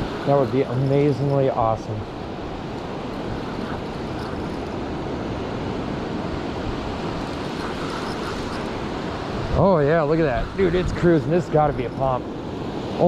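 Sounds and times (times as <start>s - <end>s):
surf washing on beach: 0.0s - 13.0s
wind buffeting microphone: 0.0s - 13.0s.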